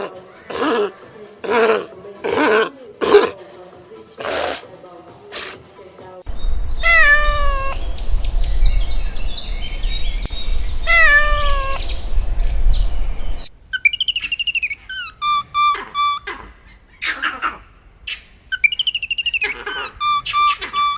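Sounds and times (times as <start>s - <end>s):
low rumble: 6.3s - 13.5s
bird chirping: 6.3s - 16.2s, 18.1s - 20.9s
cat meowing: 6.8s - 7.8s, 10.8s - 11.9s.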